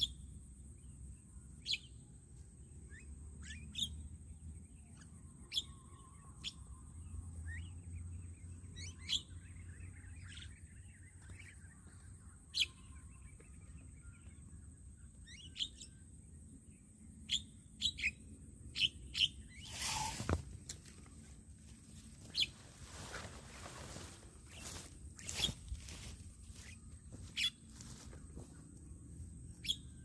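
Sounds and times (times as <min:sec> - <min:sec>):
birds chirping: 0:02.9 - 0:16.0, 0:21.8 - 0:30.0.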